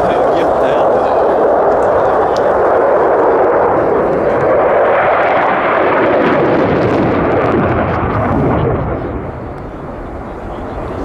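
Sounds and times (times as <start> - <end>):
jet engine roar: 0.0 - 11.0.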